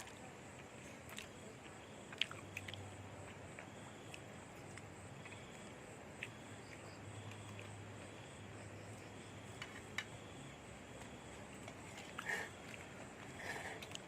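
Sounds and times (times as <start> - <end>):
eating clicks: 1.0 - 7.6.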